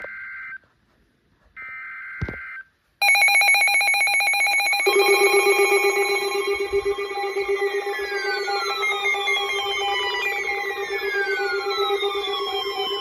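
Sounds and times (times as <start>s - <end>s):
rapidly pulsing alarm: 3.0s - 13.0s
short ringing alert bursts: 3.0s - 13.0s
lower alert tone: 4.8s - 13.0s.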